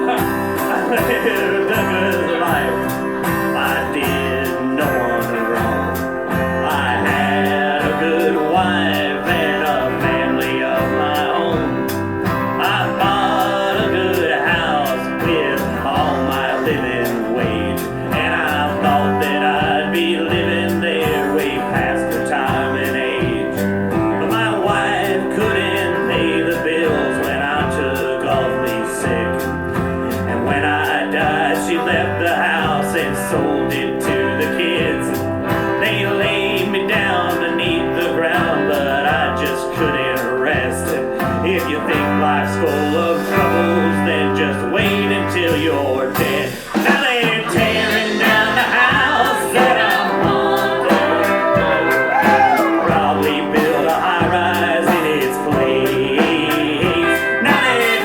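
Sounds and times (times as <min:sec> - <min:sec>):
live country band: 0:00.0 - 0:58.0
pitch-bending lead guitar line: 0:00.0 - 0:58.0
pulsing bass: 0:47.5 - 0:54.8.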